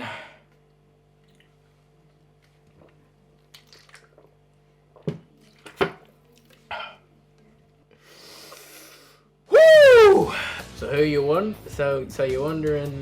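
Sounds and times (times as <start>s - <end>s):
man grunting: 9.5s - 10.4s
man gulping and gasping: 9.5s - 10.4s.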